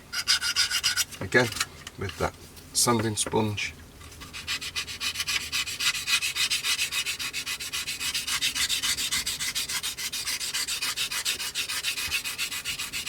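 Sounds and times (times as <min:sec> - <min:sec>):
sponge sanding plastic: 0:04.2 - 0:13.0.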